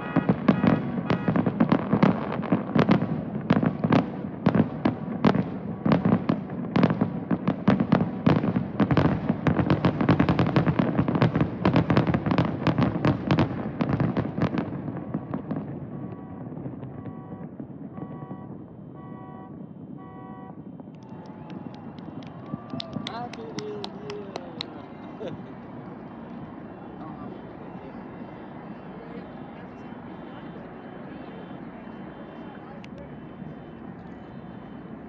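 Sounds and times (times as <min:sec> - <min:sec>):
fireworks bursting: 0:00.0 - 0:35.0
faint horn-like tones: 0:15.9 - 0:20.6.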